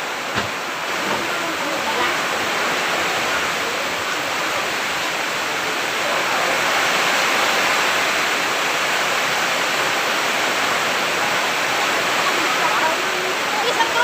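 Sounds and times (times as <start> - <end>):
heavy rain pouring: 0.0 - 14.0.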